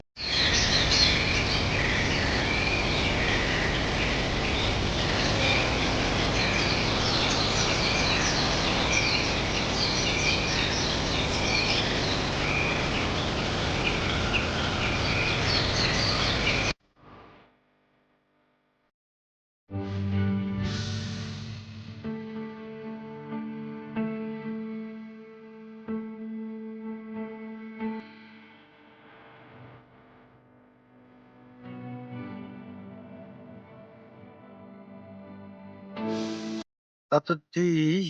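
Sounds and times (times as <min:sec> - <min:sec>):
small birds chirping: 0:00.2 - 0:16.7.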